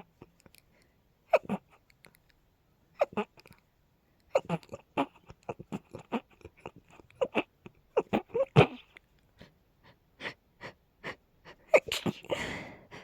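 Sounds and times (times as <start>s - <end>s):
woman sneezing: 11.7s - 12.6s.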